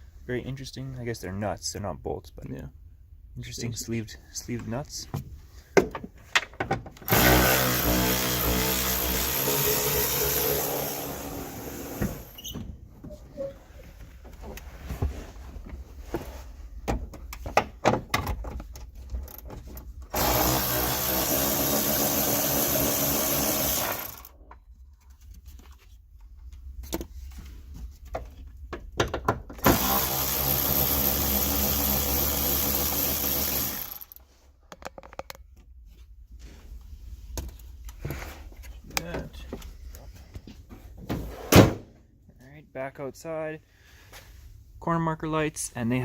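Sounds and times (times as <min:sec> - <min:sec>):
power tool spinning off nuts: 0:07.1 - 0:12.4, 0:20.1 - 0:24.4, 0:29.6 - 0:34.2.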